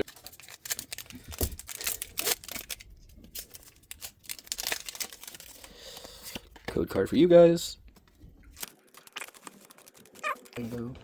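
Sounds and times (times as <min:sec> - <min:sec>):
foil wrapper crinkling and tearing: 0:00.0 - 0:06.6, 0:08.5 - 0:10.9
cards being handled: 0:07.9 - 0:11.0.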